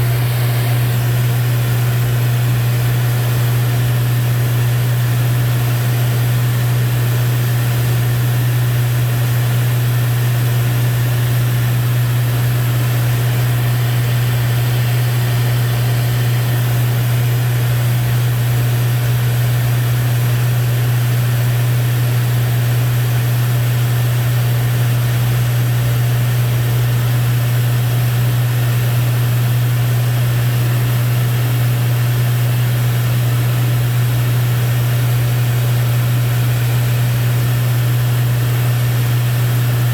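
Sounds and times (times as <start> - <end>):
airflow hiss: 0.0 - 1.5
aircraft engine and propeller drone: 0.0 - 20.6.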